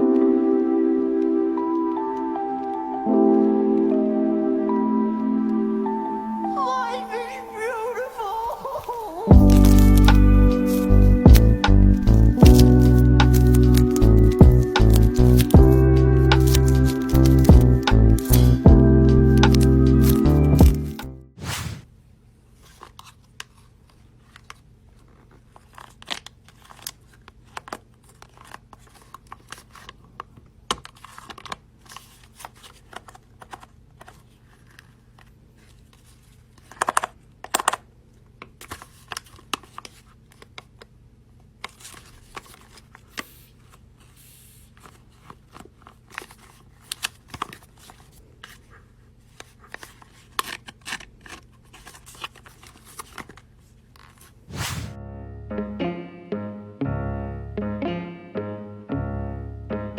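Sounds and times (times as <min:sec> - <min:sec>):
paper rustling and tearing: 0:08.1 - 0:18.6, 0:22.6 - 0:30.2, 0:41.6 - 0:48.6, 0:49.4 - 0:55.0.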